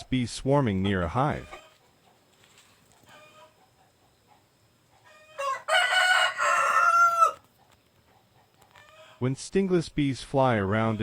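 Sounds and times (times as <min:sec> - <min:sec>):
rooster crowing: 0:05.0 - 0:07.5.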